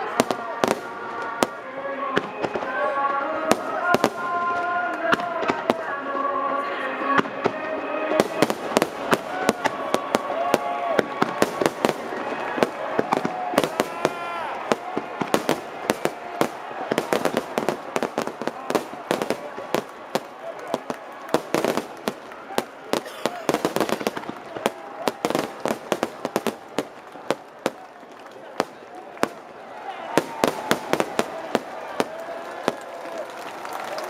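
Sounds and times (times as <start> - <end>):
song over loudspeakers: 0.0 - 22.3
fireworks bangs and crackling: 0.0 - 34.0.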